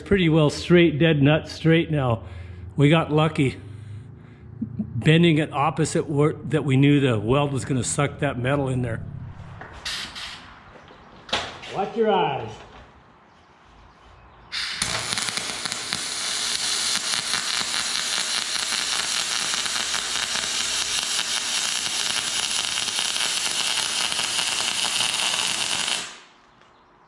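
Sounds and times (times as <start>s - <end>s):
welding arc crackling sizzle: 14.6s - 26.5s.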